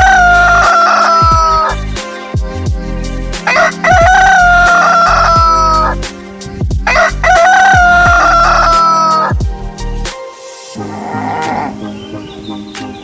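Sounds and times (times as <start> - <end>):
rooster crowing: 0.0 - 1.8, 3.5 - 6.0, 6.9 - 9.4
music with heavy bass beat: 0.0 - 11.9.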